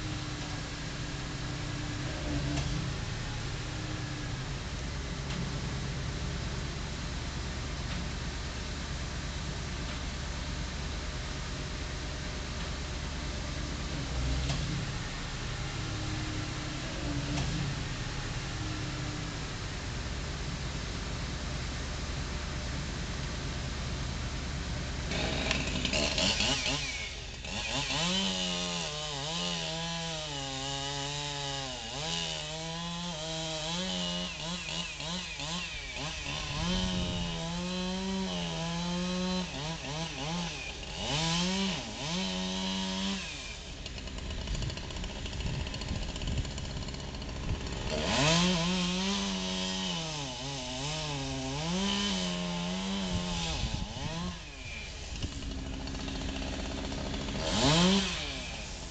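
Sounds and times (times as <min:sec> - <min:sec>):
chainsaw cutting a tree: 0:00.0 - 0:20.6, 0:24.5 - 0:58.9.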